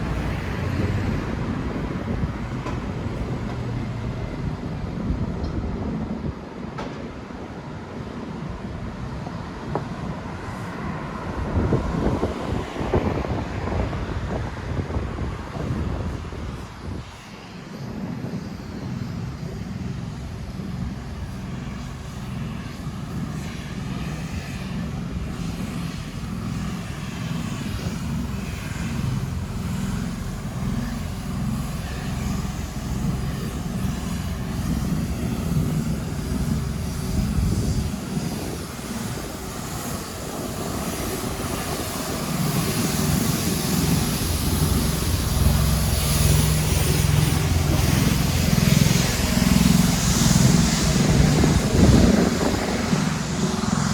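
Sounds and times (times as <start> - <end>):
low engine rumble: 17.9 - 53.9.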